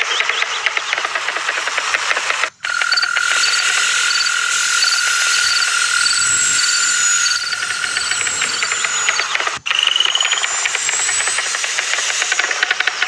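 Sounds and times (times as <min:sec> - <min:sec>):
frog high chirps: 0:02.6 - 0:12.7
frog trilling: 0:02.6 - 0:13.0.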